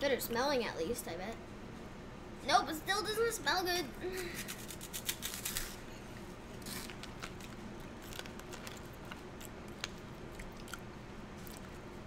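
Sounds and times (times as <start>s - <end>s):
crunchy snack being chewed: 6.6s - 11.9s.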